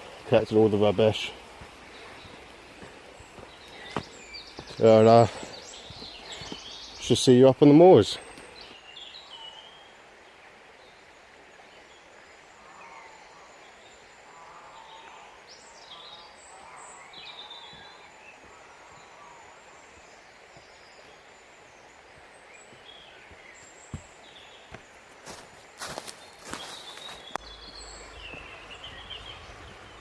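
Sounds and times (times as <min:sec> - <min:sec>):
birds chirping and whistling: 0:00.0 - 0:07.3, 0:25.8 - 0:30.0
steady background hiss: 0:00.0 - 0:30.0.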